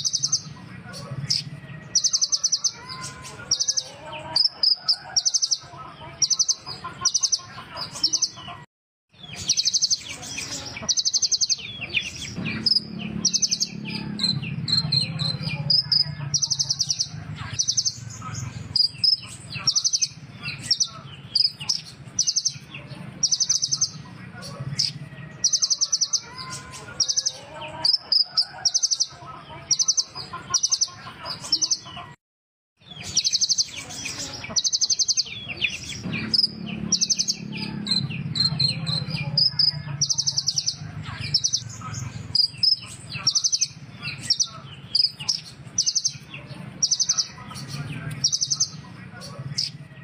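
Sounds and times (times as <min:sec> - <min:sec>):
bird chirps: 0:00.0 - 0:32.1, 0:32.8 - 0:50.0
bird high-pitched trills: 0:09.3 - 0:18.1.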